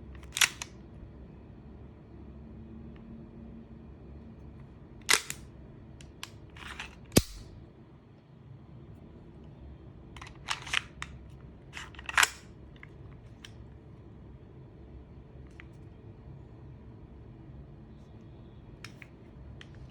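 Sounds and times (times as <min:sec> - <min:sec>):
airsoft pistol firing: 0:07.2 - 0:07.5.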